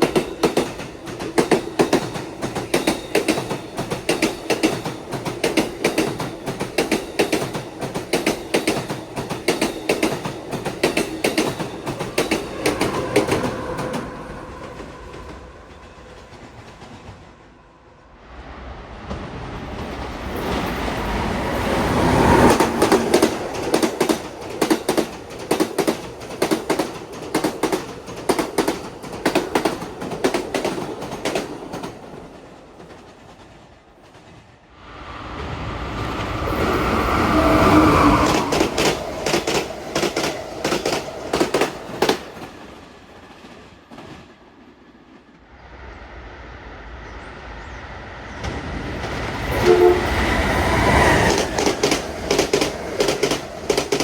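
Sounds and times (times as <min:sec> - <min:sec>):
train wheels clacking over rail joints: 0:00.0 - 0:17.4, 0:22.2 - 0:34.5, 0:37.7 - 0:44.4, 0:49.0 - 0:54.0
passenger train passing: 0:00.0 - 0:54.0.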